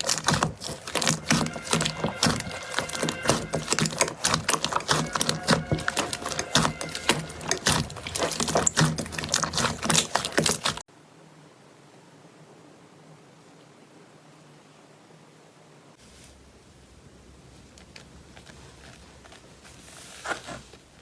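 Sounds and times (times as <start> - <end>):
slime squishing and crackling: 0.0 - 10.8.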